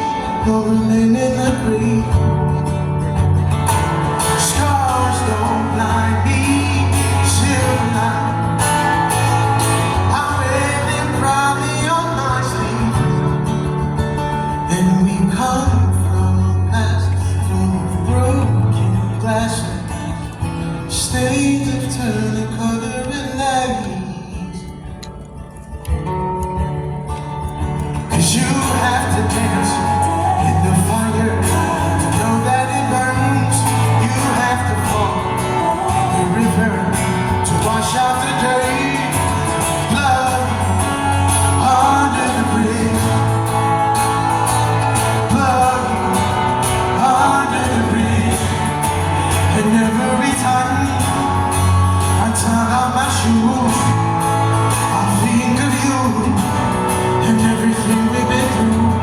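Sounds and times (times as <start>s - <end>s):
bass line: 0.0s - 59.0s
live band music: 0.0s - 59.0s
person singing: 27.8s - 59.0s.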